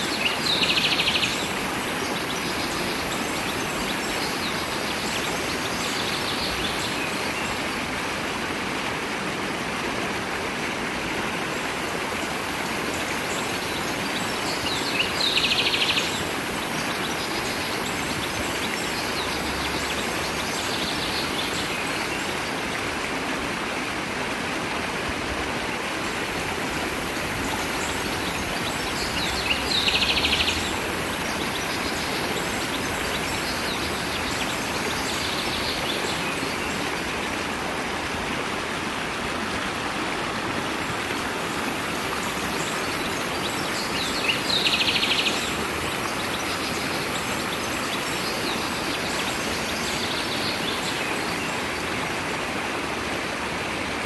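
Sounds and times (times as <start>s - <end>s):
stream flowing: 0.0s - 54.0s
birds chirping: 26.6s - 37.2s, 42.0s - 51.6s.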